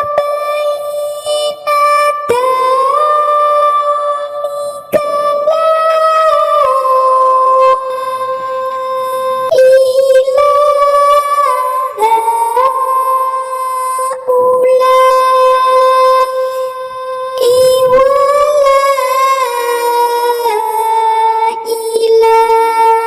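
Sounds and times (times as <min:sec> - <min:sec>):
high-pitched voice chanting: 0:17.4 - 0:19.6.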